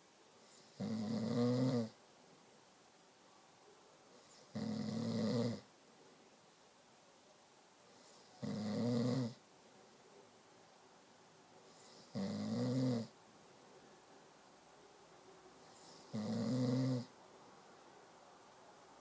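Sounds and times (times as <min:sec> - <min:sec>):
low buzzing snores: 0:00.5 - 0:02.0, 0:04.3 - 0:05.7, 0:08.0 - 0:09.4, 0:11.8 - 0:13.1, 0:15.7 - 0:17.1.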